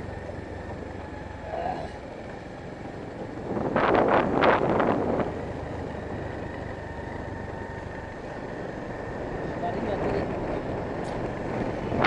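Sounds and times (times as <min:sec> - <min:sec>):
motorbike engine running: 0:00.0 - 0:12.0
wind noise on microphone: 0:03.2 - 0:05.5, 0:10.0 - 0:12.0.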